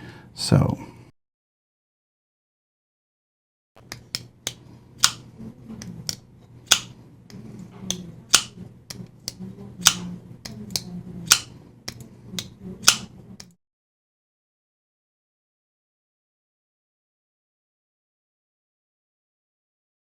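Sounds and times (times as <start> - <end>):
folding knife clicking: 3.8 - 5.2, 5.8 - 7.0, 7.9 - 13.6.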